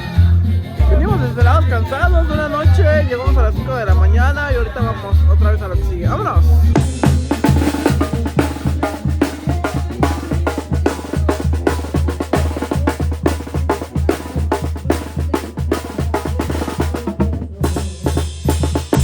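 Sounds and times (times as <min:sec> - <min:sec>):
banda music: 0:00.0 - 0:19.0
low brass bass line: 0:00.0 - 0:19.0
bass drum and snare strikes: 0:06.1 - 0:19.0.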